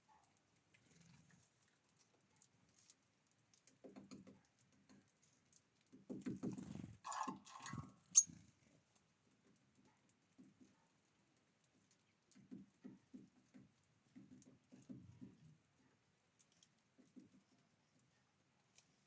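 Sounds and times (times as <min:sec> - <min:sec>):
birds pattering and fluttering: 0:00.3 - 0:10.8.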